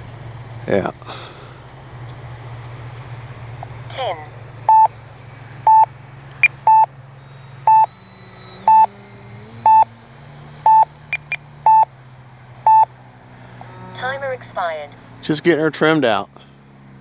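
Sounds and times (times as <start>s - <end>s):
faint steady hum: 0.0s - 17.0s
quick higher beeps: 4.7s - 4.9s, 5.7s - 6.9s, 7.7s - 10.0s, 10.6s - 11.9s, 12.7s - 12.9s
short mid-pitched timer beeps: 4.7s - 4.9s, 5.7s - 6.9s, 7.7s - 7.9s, 8.5s - 9.0s, 9.6s - 9.9s, 10.6s - 11.9s, 12.7s - 12.9s.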